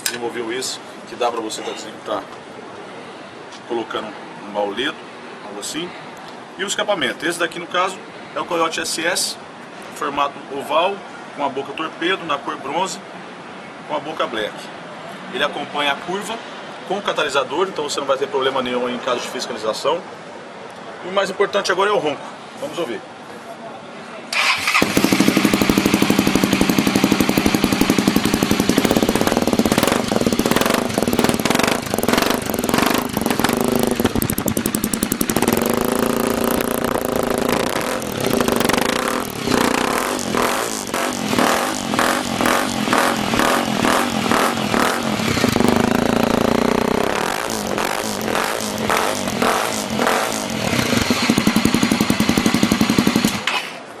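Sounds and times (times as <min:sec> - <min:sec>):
motorcycle engine idling and revving: 0:24.4 - 0:53.7.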